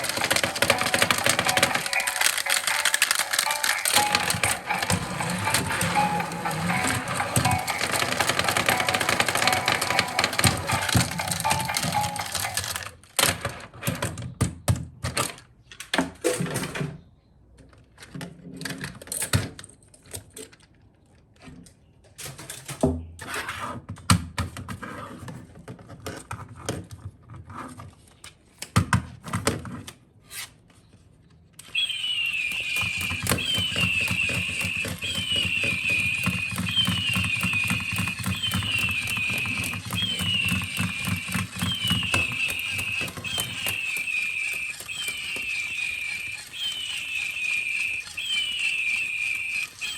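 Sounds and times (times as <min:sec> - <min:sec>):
toy electronic hum with chirp: 0:00.0 - 0:12.8, 0:31.6 - 0:49.9
plastic toy pieces clicking: 0:00.0 - 0:13.6, 0:31.6 - 0:49.9.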